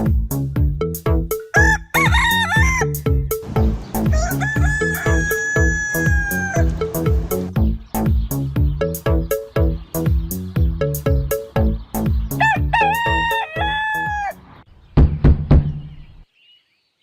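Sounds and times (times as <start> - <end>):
upbeat children's music: 0.0 - 14.2
rooster crowing: 1.5 - 3.0, 4.0 - 6.9, 12.4 - 14.4.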